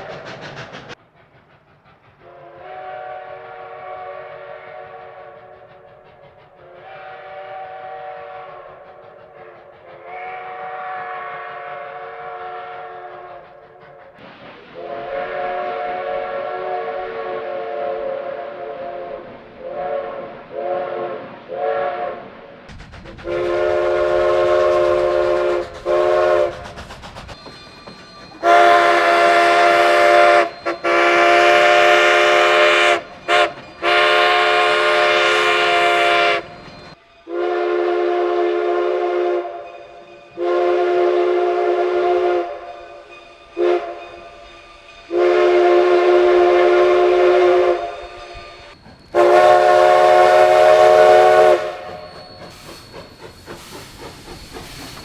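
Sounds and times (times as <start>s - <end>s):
locomotive horn chime: 28.3s - 52.4s.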